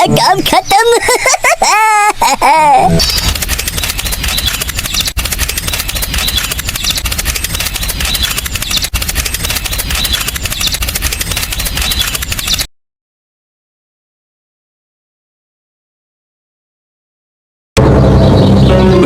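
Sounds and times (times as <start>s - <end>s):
small engine chugging: 3.0s - 12.6s.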